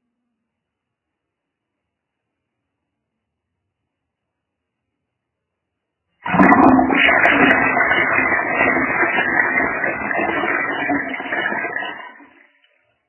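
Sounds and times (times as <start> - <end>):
toilet flushing: 6.2 - 12.6.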